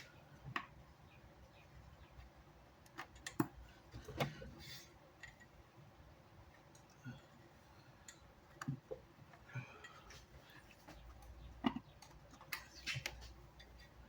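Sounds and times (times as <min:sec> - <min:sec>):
small parts and tools clicking: 0:02.8 - 0:04.4, 0:05.1 - 0:05.6.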